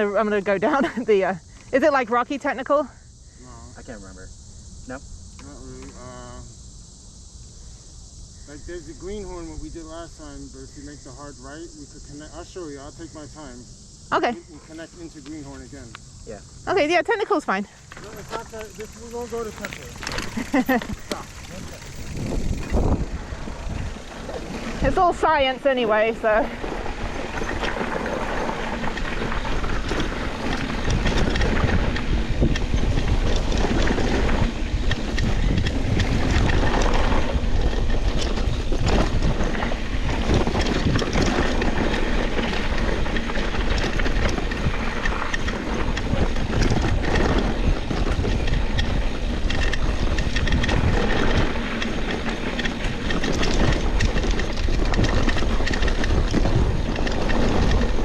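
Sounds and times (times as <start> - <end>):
wind buffeting microphone: 14.4 - 58.0
bike tyres rattling on dirt trail: 14.5 - 58.0.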